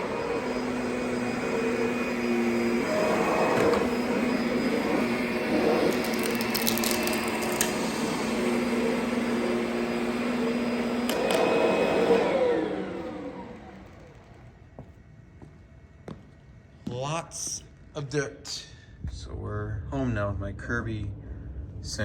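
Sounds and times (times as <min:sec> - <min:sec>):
vacuum cleaner running: 0:00.0 - 0:14.9.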